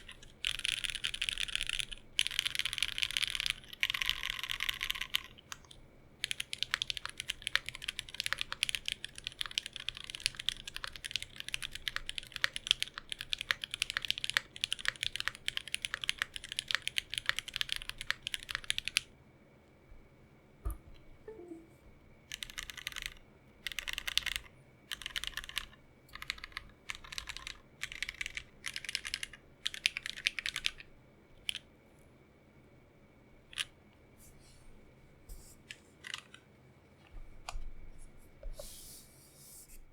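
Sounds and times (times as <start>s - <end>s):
mechanical keyboard typing: 0.0s - 19.1s, 22.3s - 31.6s, 36.0s - 36.4s.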